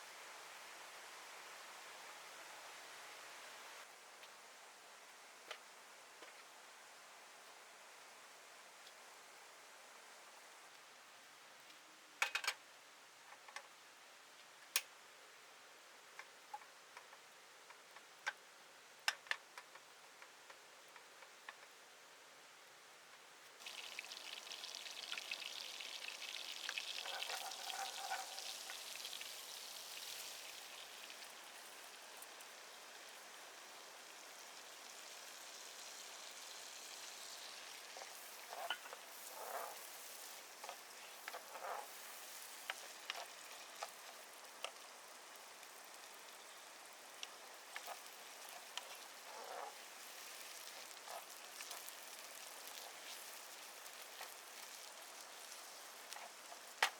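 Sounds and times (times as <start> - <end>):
food sizzling in oil: 23.6 - 56.9.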